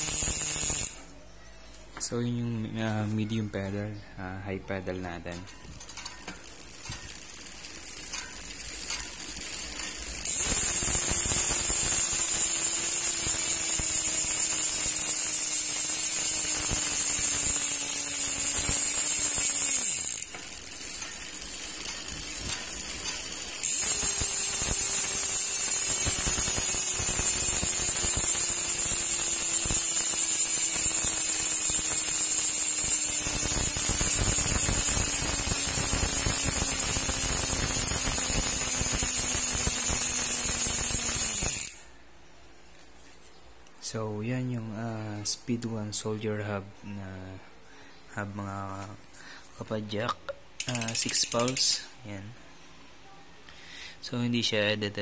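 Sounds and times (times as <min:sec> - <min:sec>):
bicycle hub ratchet buzz: 0:00.0 - 0:01.1, 0:05.1 - 0:42.0, 0:50.6 - 0:51.9.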